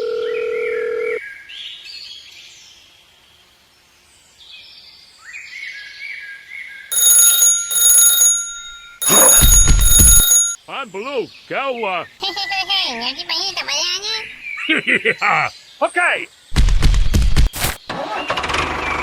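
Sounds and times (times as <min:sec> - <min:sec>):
alarm clock bell ringing: 0:06.9 - 0:10.6
steady electronic beep: 0:08.2 - 0:10.6.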